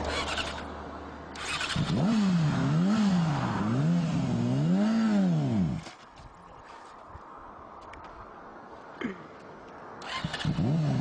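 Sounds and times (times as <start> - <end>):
motorcycle engine revving: 0.0 - 0.7, 1.3 - 5.8, 10.0 - 11.0.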